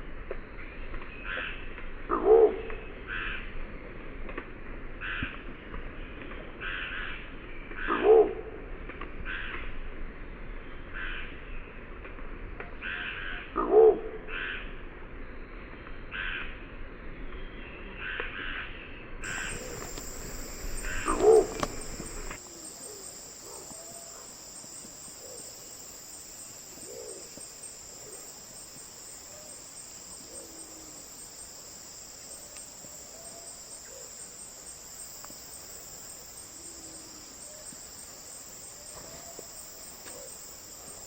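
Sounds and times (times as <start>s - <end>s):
pigeon hooting calls: 19.2s - 24.3s
high insect drone: 19.2s - 41.0s.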